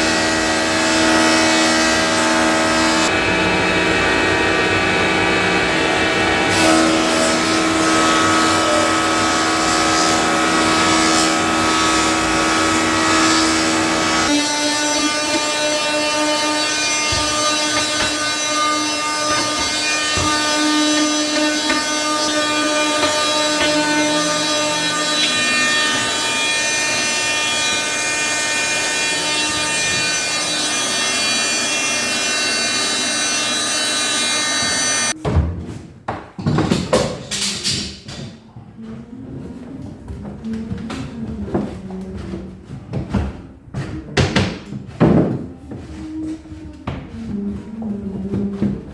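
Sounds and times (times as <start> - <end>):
planer running: 0.0 - 35.1.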